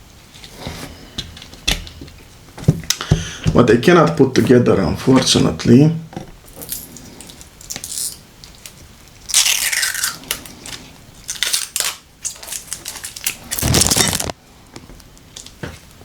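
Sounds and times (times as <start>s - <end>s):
plastic parts scraping: 10.1s - 14.4s.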